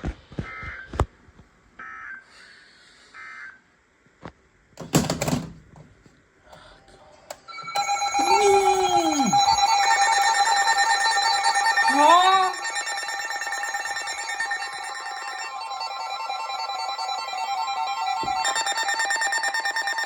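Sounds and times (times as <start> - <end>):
emergency alert tone: 7.5 - 20.0
person's voice: 8.2 - 9.5, 11.9 - 12.6.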